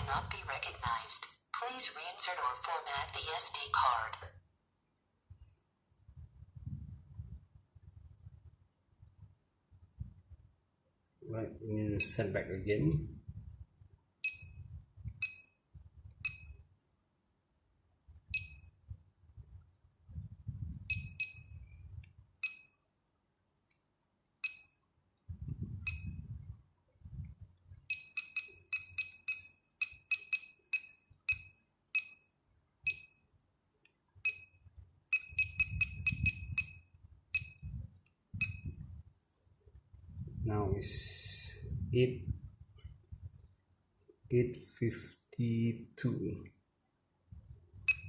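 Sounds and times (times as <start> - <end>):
short electronic beeps: 20.9 - 21.7, 25.9 - 26.4, 34.2 - 37.8, 38.4 - 38.8.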